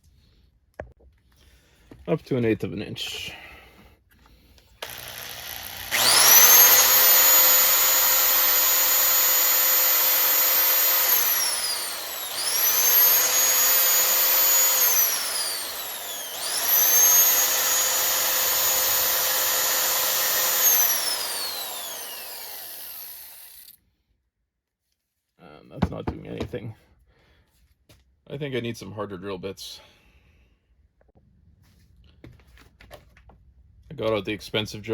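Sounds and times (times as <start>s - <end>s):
electric drill motor whine: 4.8s - 23.8s.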